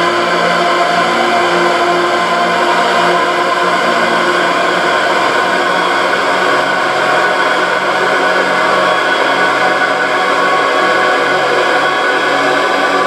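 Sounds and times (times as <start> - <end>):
drone music: 0.0 - 9.0.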